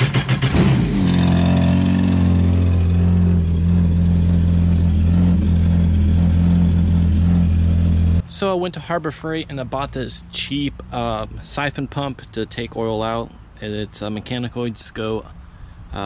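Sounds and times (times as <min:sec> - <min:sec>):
watercraft engine starting and idling: 0:00.0 - 0:06.1.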